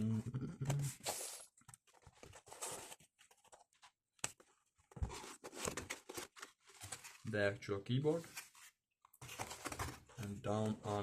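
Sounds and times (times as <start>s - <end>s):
packaging foam and cardboard rustling: 0.8s - 3.7s, 8.0s - 10.1s.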